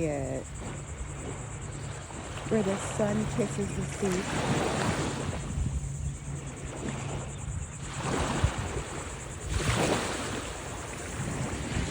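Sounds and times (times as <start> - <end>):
ocean surf washing ashore: 0.0 - 11.9
wind buffeting microphone: 0.0 - 11.9.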